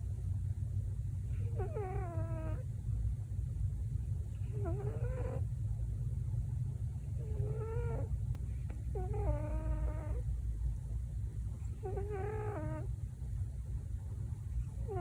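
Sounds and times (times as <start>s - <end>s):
steady low hum: 0.0s - 15.0s
cat snoring: 1.3s - 2.6s, 4.3s - 5.5s, 7.1s - 10.3s, 11.6s - 12.9s, 14.5s - 15.0s.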